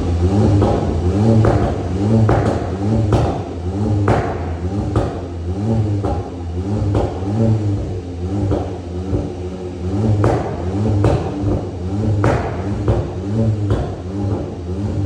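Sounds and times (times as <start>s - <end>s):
car engine revving in blips: 0.0s - 15.0s
exhaust pops and cracks: 0.0s - 15.0s.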